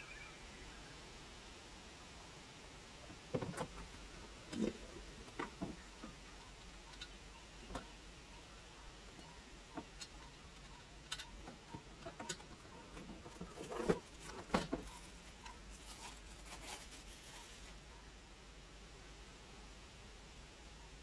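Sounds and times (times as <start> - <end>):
plastic parts clicking and tapping: 9.7 - 16.7.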